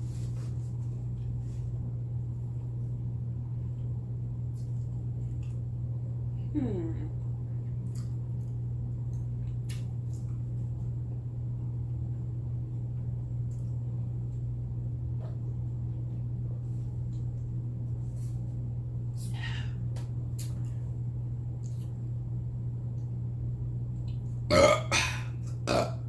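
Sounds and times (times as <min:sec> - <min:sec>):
steady low hum: 0:00.0 - 0:26.0
chewing crunchy chips: 0:07.6 - 0:11.0.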